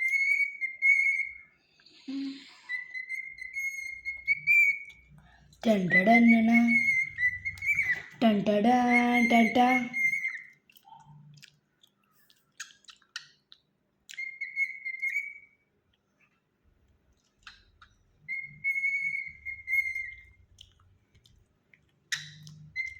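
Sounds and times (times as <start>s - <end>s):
cockatiel whistling held notes: 0.0s - 5.1s, 5.9s - 8.2s, 14.2s - 15.6s, 18.3s - 20.4s, 22.2s - 22.9s
cockatiel clicks and chirps: 2.7s - 5.2s, 6.9s - 8.2s, 10.0s - 15.5s, 17.2s - 22.9s.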